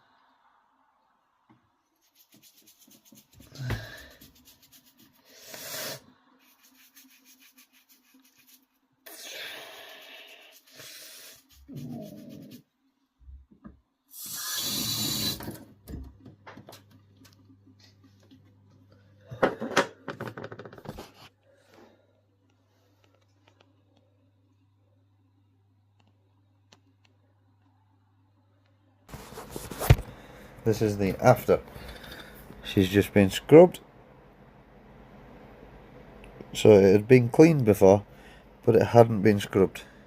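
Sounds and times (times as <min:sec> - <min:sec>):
toothbrush scrubbing wet skin: 0:02.0 - 0:12.7.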